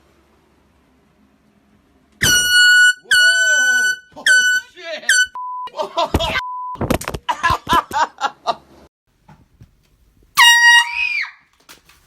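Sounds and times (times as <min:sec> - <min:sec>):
speech: 0:03.1 - 0:04.0, 0:04.6 - 0:05.1.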